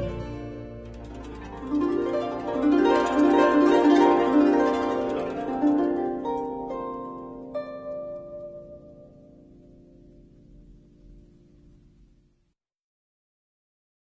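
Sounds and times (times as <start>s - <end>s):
low sustained bass note: 0.0s - 6.2s
plucked string arpeggios: 0.0s - 12.0s.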